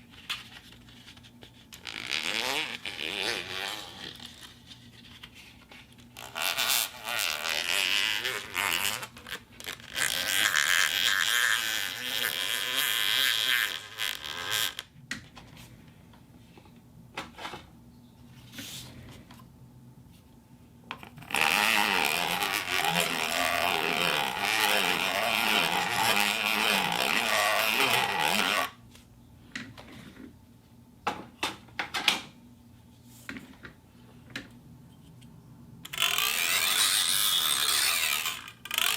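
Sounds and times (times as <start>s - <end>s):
plastic cup rubbing and crackling: 0.1s - 14.8s, 21.0s - 28.8s, 35.9s - 38.9s.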